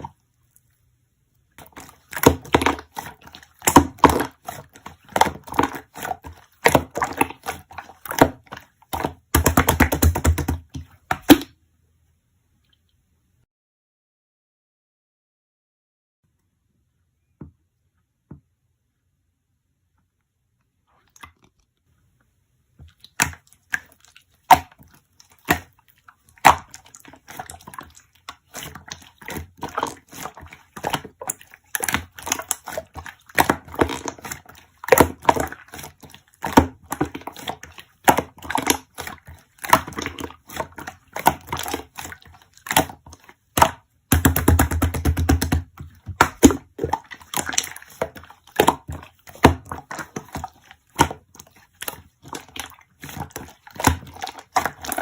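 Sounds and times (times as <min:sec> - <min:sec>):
slime squished by hand: 0:01.5 - 0:11.5, 0:22.8 - 0:55.0.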